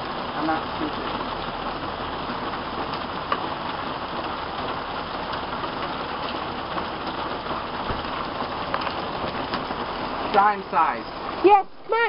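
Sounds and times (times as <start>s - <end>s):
hailstones ticking: 0.0s - 12.0s
heavy rain hissing: 0.0s - 12.0s.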